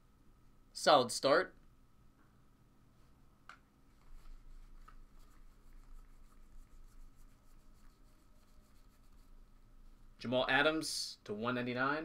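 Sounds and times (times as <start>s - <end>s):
faint hum: 0.0s - 12.0s.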